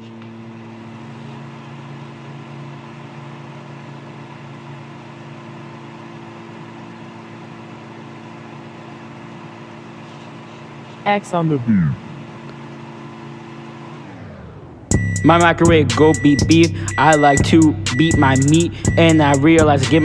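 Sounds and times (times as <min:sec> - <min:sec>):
microwave oven humming: 0:00.0 - 0:20.0
microwave fan rushing: 0:11.7 - 0:17.4.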